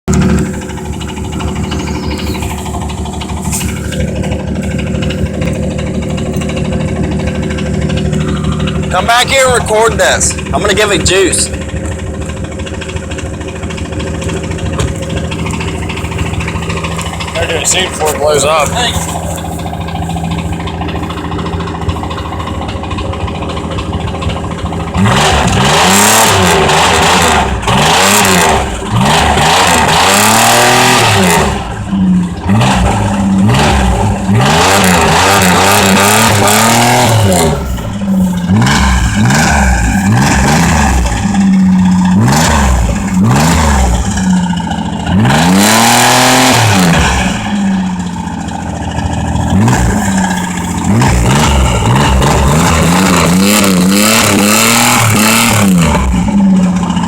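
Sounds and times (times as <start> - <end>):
car engine idling and revving: 0.0 - 57.0
engine rod knock: 11.6 - 17.4.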